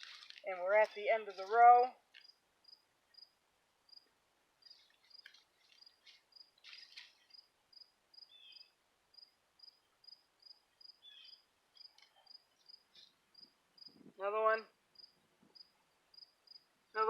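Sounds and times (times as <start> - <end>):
scratchy rustles of soil: 0.0 - 2.4, 4.6 - 7.5
cricket chirping: 2.2 - 6.5, 7.2 - 14.0, 14.9 - 16.7.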